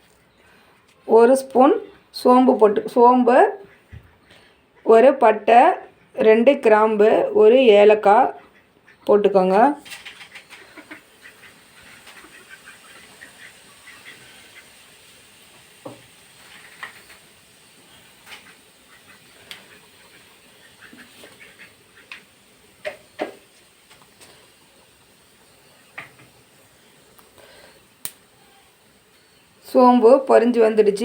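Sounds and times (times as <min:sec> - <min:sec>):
seeds crackling and popping: 0:09.5 - 0:31.0
spices frying in hot oil: 0:09.6 - 0:31.0.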